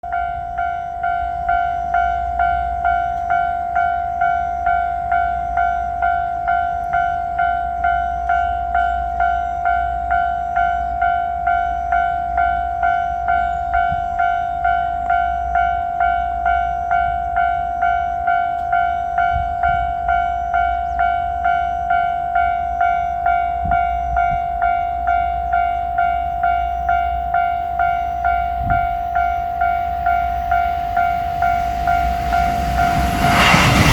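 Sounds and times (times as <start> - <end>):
level-crossing warning bell: 0.0 - 33.9
low rumble: 28.5 - 33.9.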